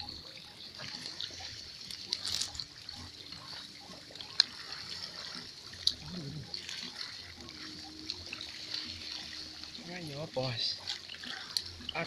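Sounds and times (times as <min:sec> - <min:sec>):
water trickling: 0:00.0 - 0:12.0
splashing through swamp water: 0:00.8 - 0:12.0.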